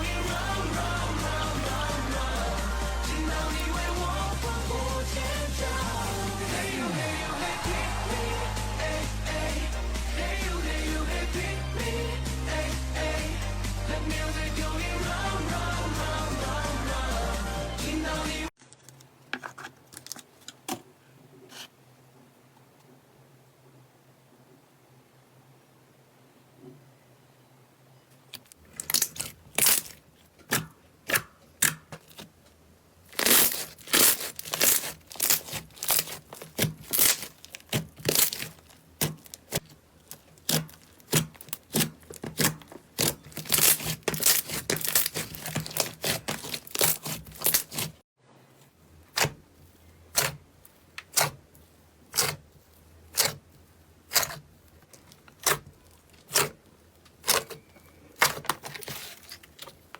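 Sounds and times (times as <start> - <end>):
slime crackling pops: 33.2 - 39.6.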